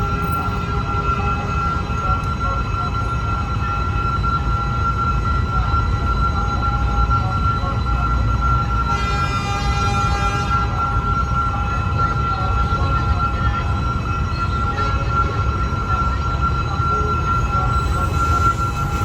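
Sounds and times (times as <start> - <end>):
high-pitched ringing tone: 0.0 - 19.0.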